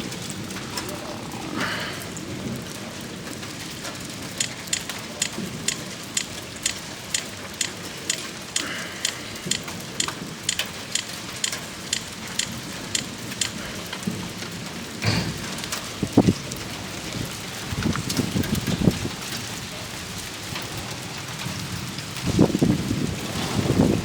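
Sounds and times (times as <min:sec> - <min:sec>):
heavy rain falling: 0:00.0 - 0:24.0
drops ticking on hard surface: 0:04.3 - 0:14.0.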